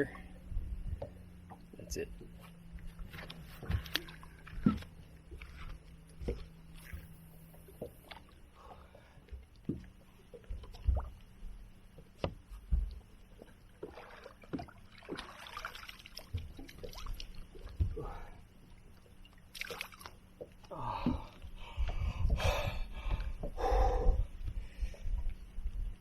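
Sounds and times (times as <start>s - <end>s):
water against a hull: 0.0s - 26.0s
gear knocking in a boat: 0.6s - 8.1s.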